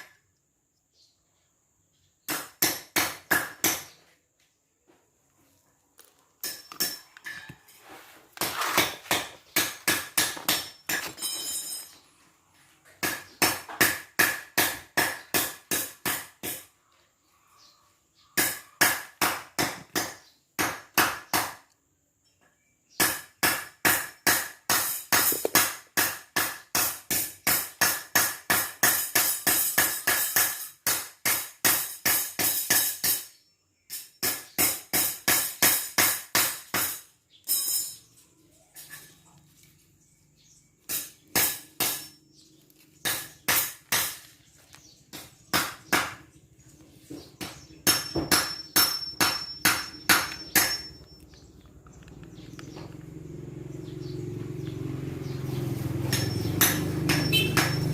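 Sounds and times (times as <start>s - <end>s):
hammer tapping on metal: 47.4s - 51.1s, 56.1s - 57.9s.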